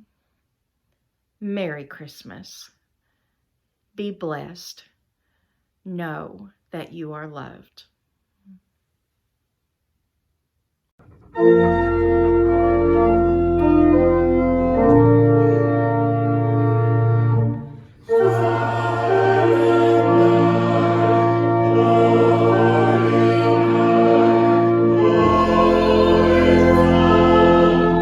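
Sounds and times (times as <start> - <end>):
organ playing chords: 11.0 - 28.0.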